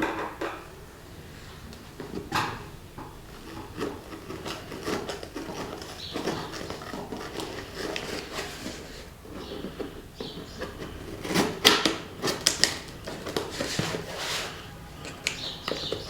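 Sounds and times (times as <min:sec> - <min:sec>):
cardboard box scraping and rustling: 0:03.4 - 0:14.8.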